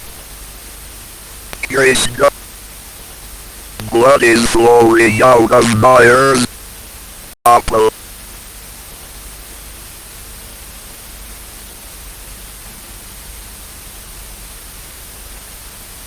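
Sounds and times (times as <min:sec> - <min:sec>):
static hiss: 0:00.0 - 0:00.3, 0:01.6 - 0:02.3, 0:03.8 - 0:06.6, 0:07.5 - 0:07.9.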